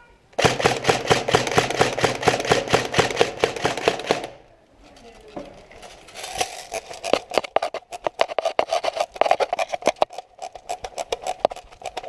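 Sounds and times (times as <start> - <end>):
airsoft guns firing: 0.4 - 4.5.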